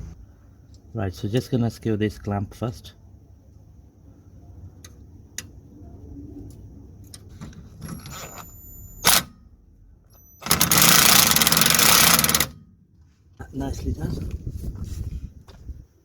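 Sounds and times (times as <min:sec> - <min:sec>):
power tool rapid clicking: 0:10.4 - 0:12.5.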